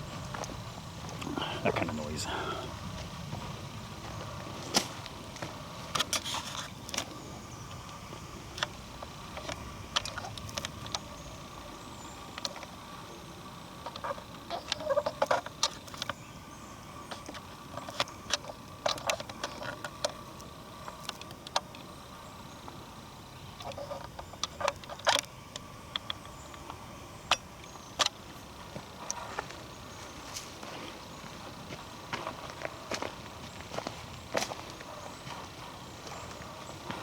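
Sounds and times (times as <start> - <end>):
footsteps crunching on gravel: 0.0 - 5.7, 28.7 - 37.0
low background rush: 0.0 - 37.0.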